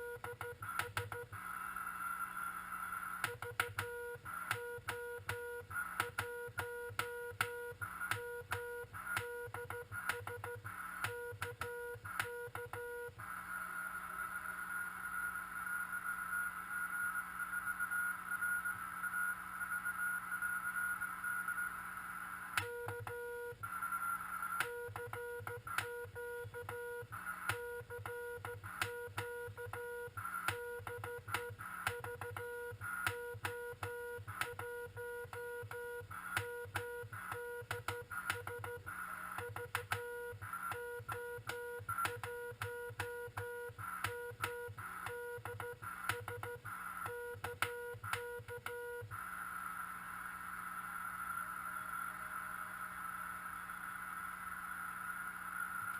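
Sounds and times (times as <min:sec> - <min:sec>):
receiver hiss: 0:00.0 - 0:55.9
steady radio tone: 0:12.5 - 0:55.8.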